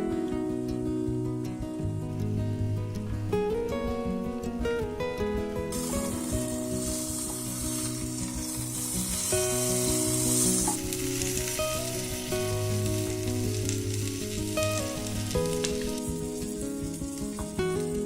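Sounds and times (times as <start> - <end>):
guitar music: 0.0 - 18.0
omelette sizzling in a pan: 5.7 - 18.0.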